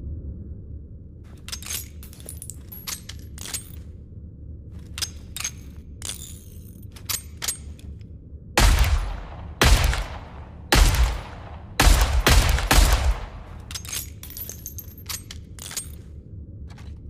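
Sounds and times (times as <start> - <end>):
revolver metal clicks and clinks: 1.4 - 3.9, 4.9 - 8.0, 8.8 - 16.1.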